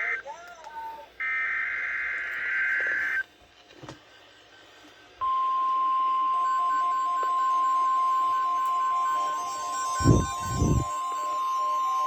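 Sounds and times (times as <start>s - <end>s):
harsh digital data warble: 0.0s - 0.3s, 1.2s - 3.2s, 5.3s - 12.0s.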